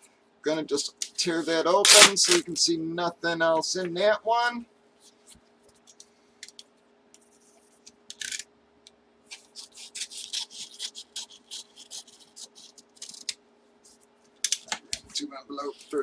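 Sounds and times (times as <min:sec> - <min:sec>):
paper packaging rustling and tearing: 0:01.8 - 0:02.5, 0:09.3 - 0:13.4.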